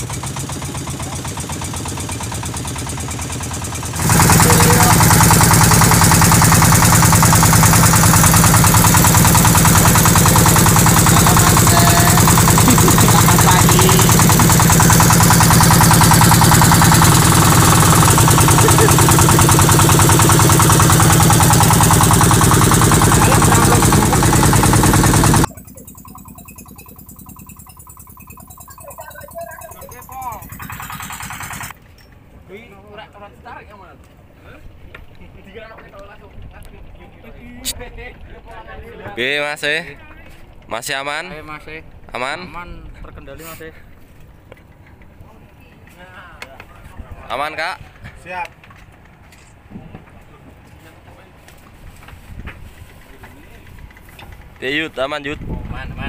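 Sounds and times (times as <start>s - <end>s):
boat engine running: 0.0s - 31.9s, 49.8s - 56.0s.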